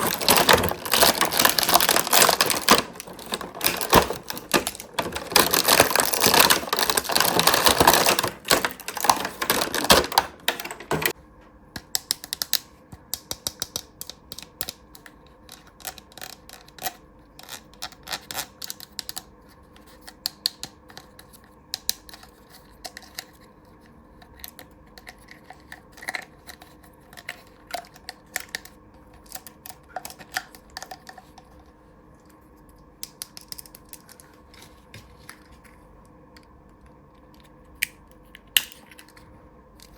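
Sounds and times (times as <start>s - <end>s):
plastic packaging crinkling: 0.0s - 11.2s
small plastic pieces clicking: 0.0s - 11.2s.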